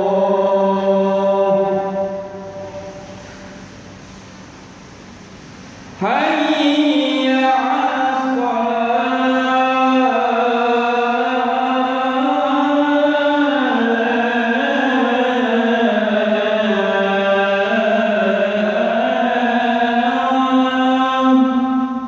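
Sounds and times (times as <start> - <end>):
man chanting call to prayer: 0.0 - 3.0, 6.0 - 22.0.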